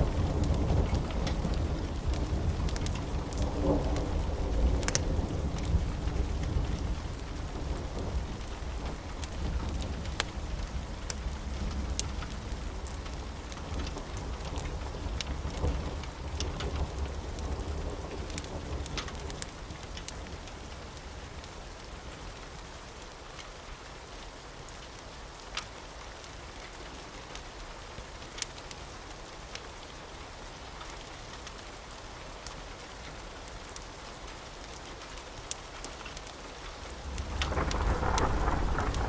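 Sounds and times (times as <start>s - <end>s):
low thunder rumble: 0.0s - 12.6s, 36.9s - 39.0s
steady rain: 0.0s - 39.0s
fireplace crackling: 36.8s - 39.0s.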